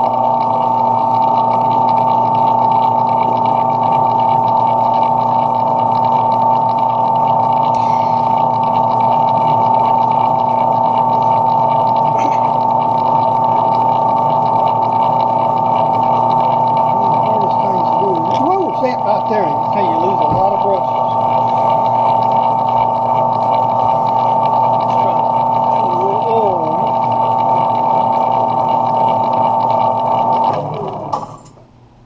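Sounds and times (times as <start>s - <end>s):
lathe hum and whine: 0.0s - 32.0s.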